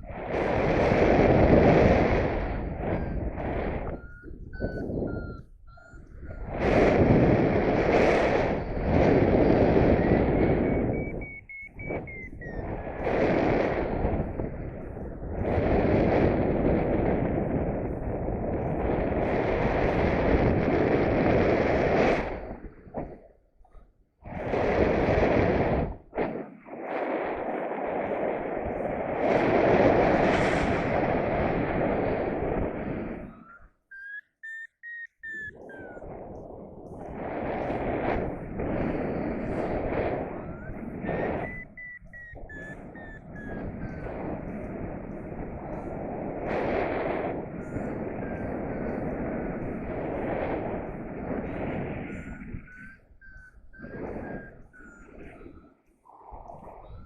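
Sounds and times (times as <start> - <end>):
wind buffeting microphone: 0.0 - 57.0
thin whistle-like tone: 2.9 - 6.4, 9.8 - 12.8, 33.3 - 36.2, 40.2 - 44.2, 51.4 - 57.0.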